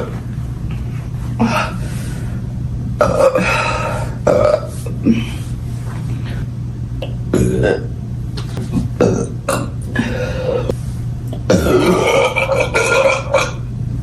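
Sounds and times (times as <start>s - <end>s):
woman burping loudly: 7.0s - 7.9s, 9.0s - 10.7s, 11.5s - 13.6s.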